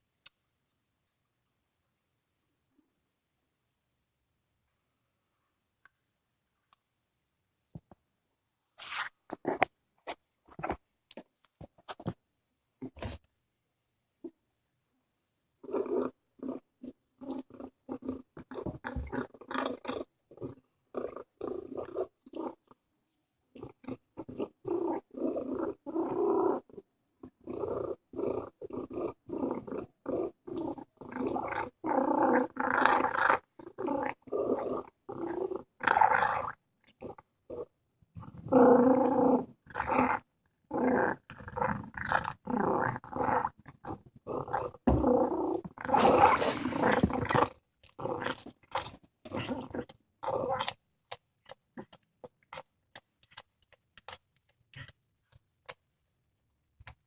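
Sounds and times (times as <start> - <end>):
cat growling: 27.4 - 50.8.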